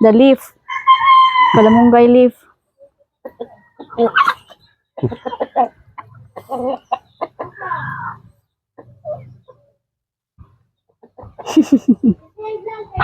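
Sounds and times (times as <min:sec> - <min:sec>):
chickens clucking: 0:02.6 - 0:09.8, 0:10.4 - 0:13.0.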